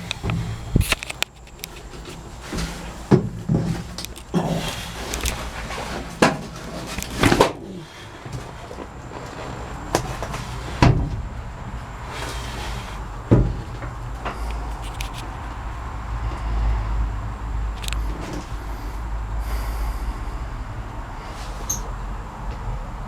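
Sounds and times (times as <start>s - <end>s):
small clicks and rattles: 0.0s - 2.2s
steady low rumble: 0.0s - 2.4s.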